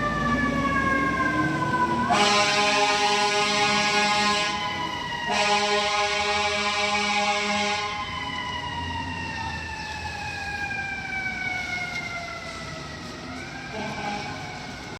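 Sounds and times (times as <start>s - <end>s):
siren: 0.0s - 14.9s
fire engine air horns: 0.1s - 8.5s, 12.4s - 14.9s.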